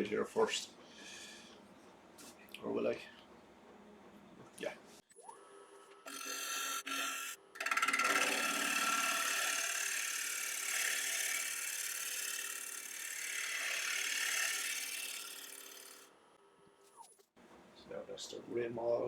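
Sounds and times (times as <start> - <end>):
lathe motor: 6.1 - 16.1
tool scraping wood: 6.1 - 16.1.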